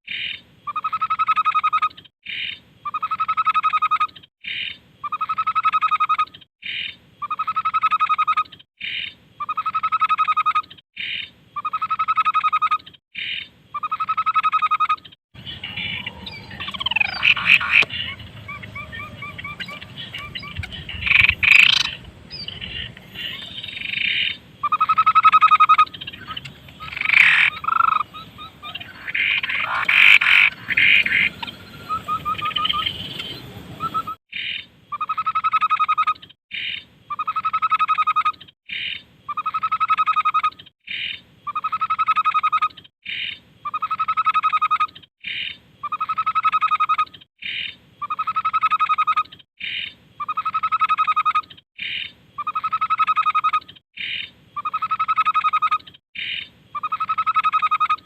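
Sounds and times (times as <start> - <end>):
bird chirps trills and whistles: 0.1 - 58.0
bird buzzy pulsed call: 15.4 - 34.2.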